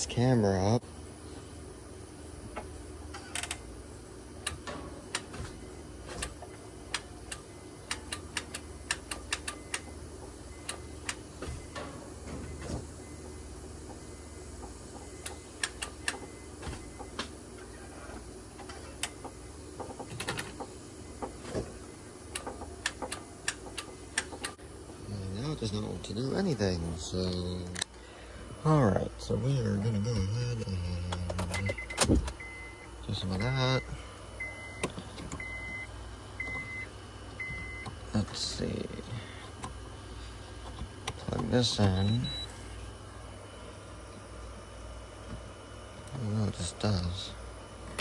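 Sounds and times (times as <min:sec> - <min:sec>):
car engine humming: 0:00.0 - 0:48.0
engine ticking and clicking: 0:06.2 - 0:11.8, 0:22.2 - 0:25.0.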